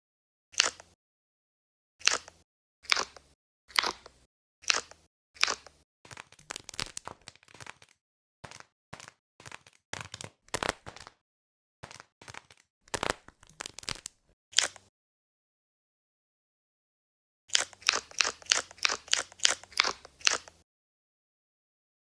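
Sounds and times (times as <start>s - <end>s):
squishy toys crunching and cracking: 4.7s - 11.2s, 11.8s - 14.8s.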